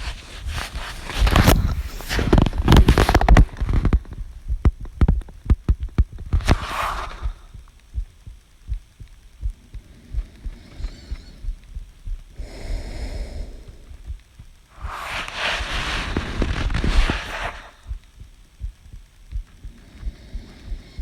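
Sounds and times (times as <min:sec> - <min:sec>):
heartbeat thumps: 0:00.0 - 0:21.0
person breathing: 0:06.3 - 0:07.7, 0:09.5 - 0:18.1, 0:19.5 - 0:21.0.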